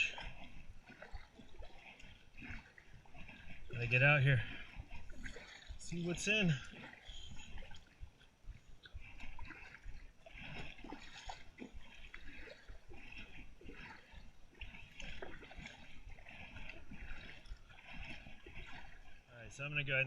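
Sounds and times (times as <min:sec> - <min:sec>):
water dripping off paddle: 0:00.0 - 0:19.3
kayak paddle strokes in water: 0:00.0 - 0:20.0.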